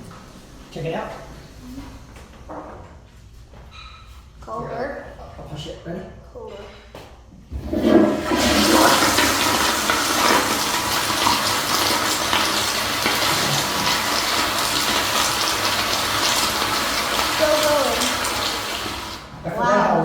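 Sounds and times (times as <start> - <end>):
toilet flushing: 7.5 - 19.7.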